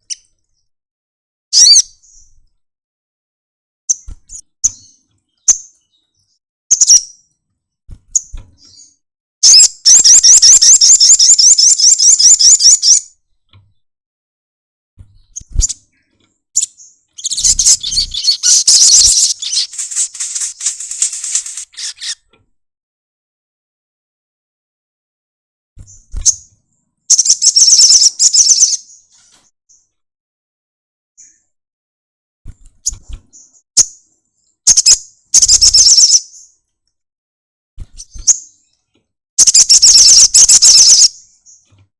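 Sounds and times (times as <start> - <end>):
bird chirping and trilling song: 1.6 - 2.4, 3.9 - 7.2, 8.1 - 13.0, 15.2 - 22.3, 27.1 - 29.1, 34.7 - 36.6, 39.4 - 41.8.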